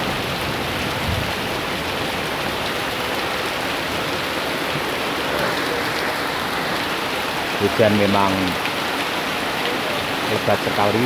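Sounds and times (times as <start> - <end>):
heavy rain drumming on roofs: 0.0 - 11.0.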